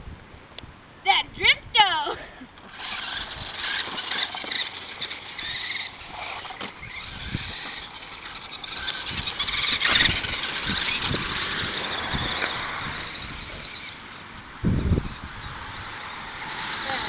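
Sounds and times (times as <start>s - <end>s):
rc car motor whine: 2.6s - 17.0s.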